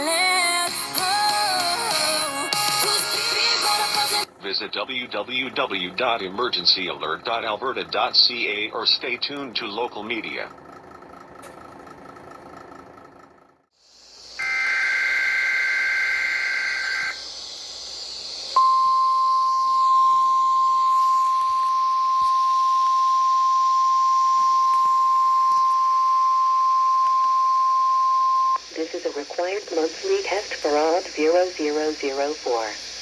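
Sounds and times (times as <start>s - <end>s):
radio hiss: 0.7s - 9.4s, 16.8s - 22.4s, 28.6s - 33.0s
steady high alarm tone: 14.4s - 28.8s.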